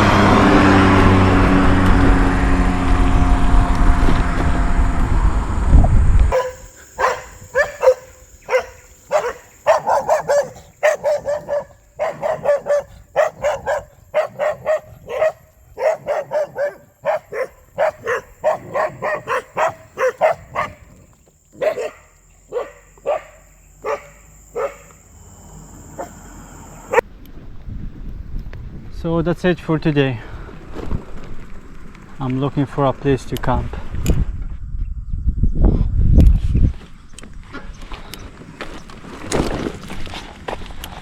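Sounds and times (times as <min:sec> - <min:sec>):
dog barking: 0:06.3 - 0:21.0, 0:21.6 - 0:25.0, 0:25.9 - 0:27.0.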